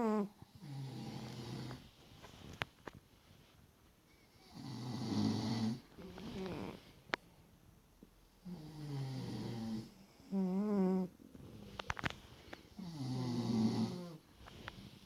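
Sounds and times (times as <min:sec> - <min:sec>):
person snoring: 0:04.5 - 0:06.8, 0:08.4 - 0:11.7, 0:12.8 - 0:14.2.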